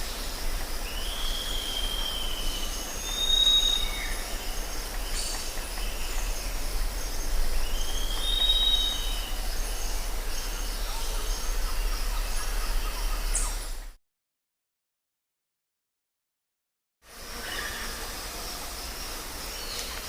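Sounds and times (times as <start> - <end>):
steady hiss: 0.0 - 13.9, 17.1 - 20.0
bird whistled call: 0.9 - 4.3, 7.7 - 13.7
low rumble: 4.2 - 14.0.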